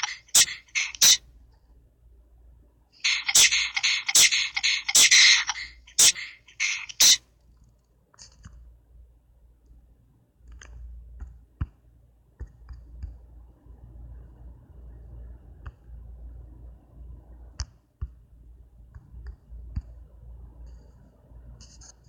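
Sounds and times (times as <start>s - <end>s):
synthetic voice hissing bursts: 0.0s - 1.2s, 3.0s - 7.2s.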